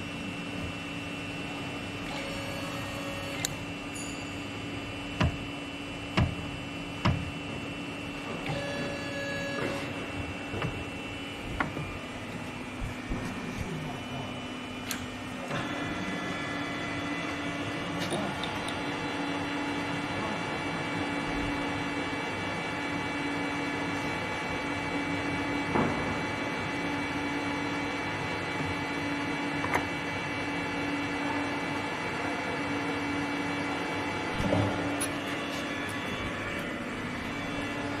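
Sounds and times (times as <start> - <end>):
machine hum: 0.0 - 22.1, 32.6 - 38.0.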